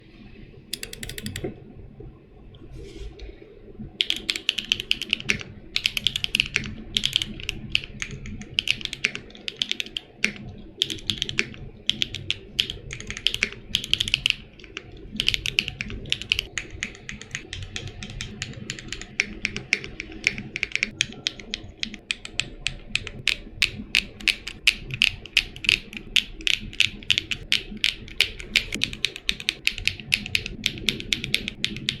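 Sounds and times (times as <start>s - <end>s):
mechanical keyboard typing: 0.7s - 1.5s, 4.0s - 32.0s.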